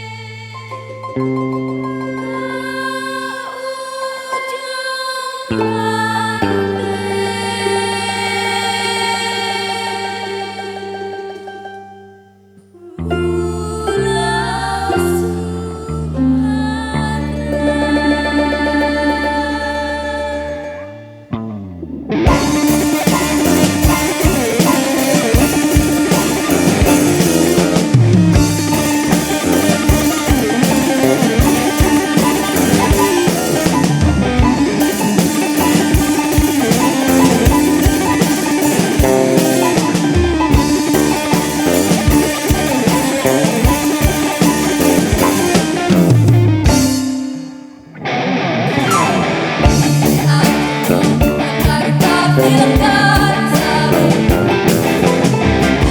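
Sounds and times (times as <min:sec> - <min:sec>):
plucked strings: 0:00.0 - 0:04.9, 0:05.5 - 0:55.9
steady held tone: 0:05.6 - 0:55.9
drums: 0:22.1 - 0:47.9, 0:48.6 - 0:55.9.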